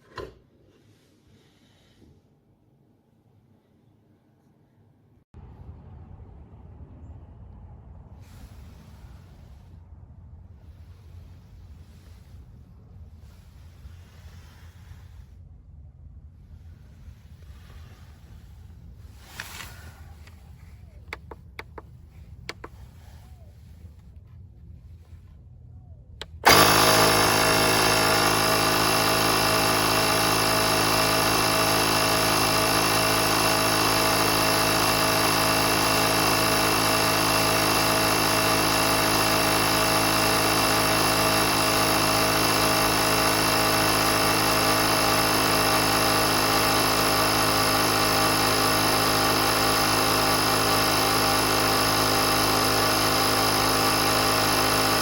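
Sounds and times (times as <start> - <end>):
air compressor running: 26.2 - 55.0.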